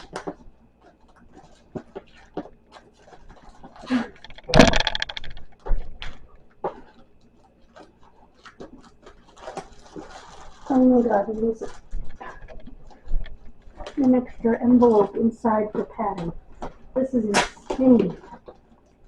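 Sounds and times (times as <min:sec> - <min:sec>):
package rustling and scraping: 0:07.7 - 0:16.9
packaging crackling: 0:07.7 - 0:18.7.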